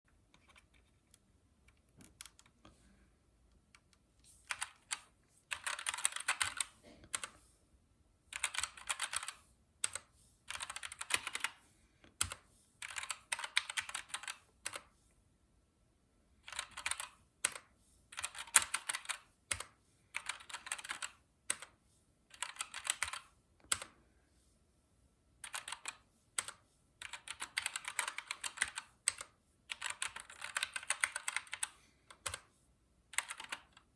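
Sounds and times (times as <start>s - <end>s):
mechanical keyboard typing: 0.3s - 2.6s, 3.8s - 7.4s, 8.3s - 11.6s, 12.2s - 14.9s, 16.4s - 23.9s, 25.4s - 32.5s, 33.1s - 33.9s.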